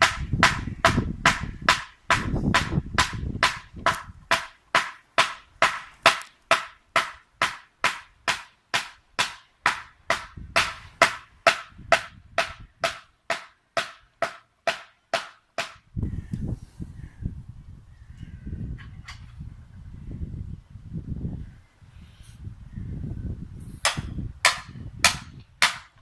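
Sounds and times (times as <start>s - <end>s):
hammer striking wedge: 0.0s - 15.8s, 23.8s - 26.0s.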